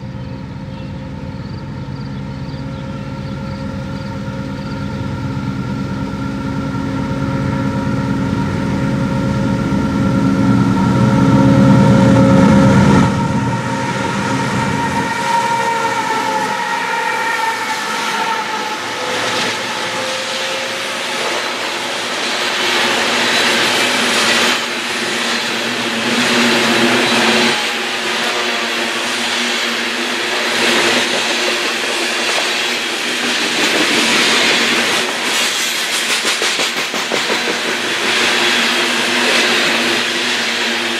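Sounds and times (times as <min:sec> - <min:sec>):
locomotive engine hum: 0:00.0 - 0:40.9
train cars clickety-clack: 0:00.0 - 0:40.9.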